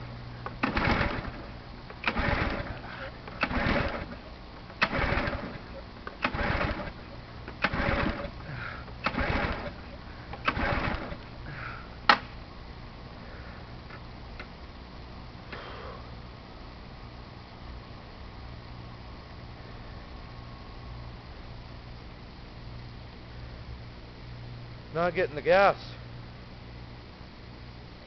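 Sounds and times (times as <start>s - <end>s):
engine turning over: 0.0s - 12.3s
engine pull-starter yanked: 0.4s - 11.3s.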